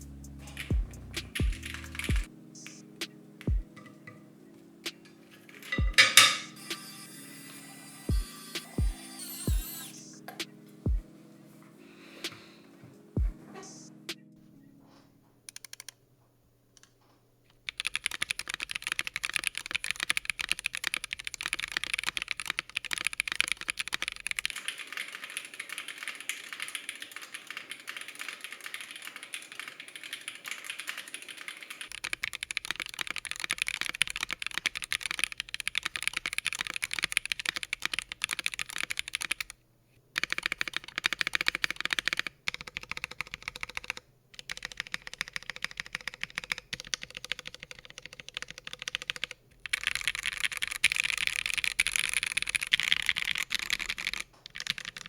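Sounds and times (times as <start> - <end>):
fast typing on mechanical keyboard: 0.5 - 2.3, 15.5 - 16.0, 17.6 - 39.6, 40.2 - 55.0.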